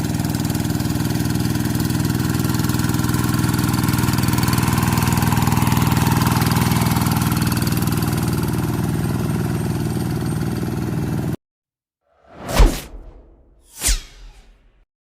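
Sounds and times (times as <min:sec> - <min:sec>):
whoosh sound effect: 0:12.2 - 0:14.8.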